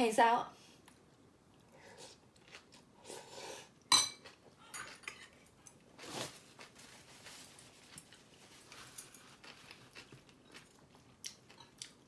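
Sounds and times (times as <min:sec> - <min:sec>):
cutlery clinking against a bowl: 0:03.9 - 0:05.4
soft handling sounds: 0:04.8 - 0:10.7.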